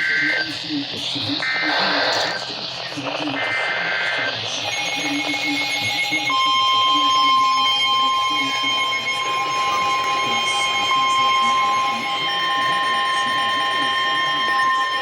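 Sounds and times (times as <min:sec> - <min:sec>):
faint steady tone: 0:04.6 - 0:15.0.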